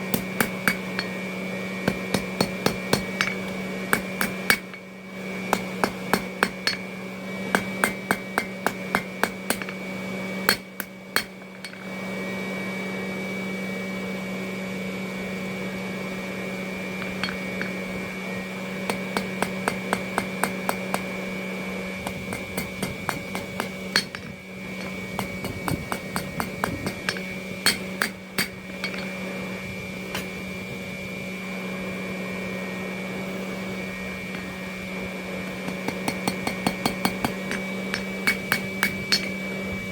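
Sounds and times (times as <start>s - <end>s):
hammer striking steel on anvil: 0.0s - 1.2s, 1.9s - 4.9s, 5.5s - 12.0s, 17.0s - 17.9s, 18.8s - 21.2s, 22.0s - 29.2s, 35.7s - 39.5s
steady hum: 0.0s - 39.9s.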